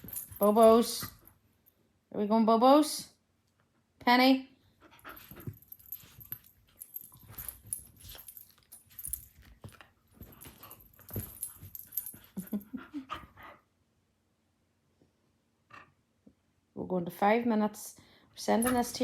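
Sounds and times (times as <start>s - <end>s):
dogs scuffling and thudding: 0.0s - 1.3s, 5.0s - 12.7s, 18.4s - 19.0s.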